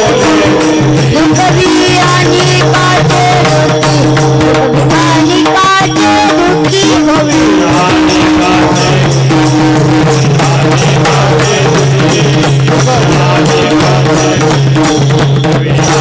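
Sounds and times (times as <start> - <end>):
sustained held notes: 0.0 - 4.4
hand drum beat: 0.0 - 16.0.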